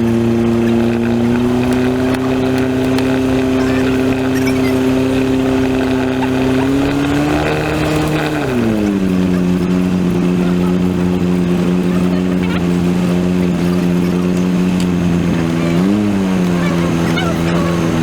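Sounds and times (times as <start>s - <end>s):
aircraft piston engine running: 0.0s - 18.0s.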